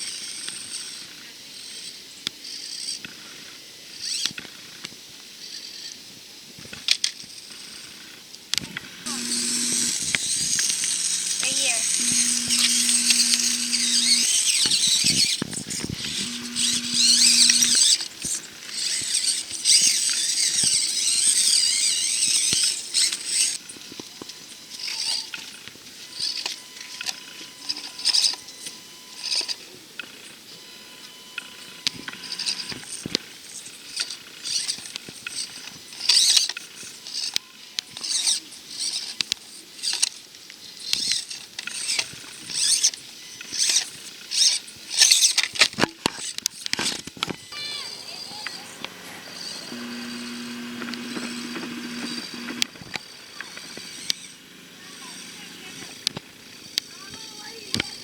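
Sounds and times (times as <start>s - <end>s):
small electric motor whining: 7.0s - 58.0s
small clicks and scrabbles on rock: 33.9s - 47.5s.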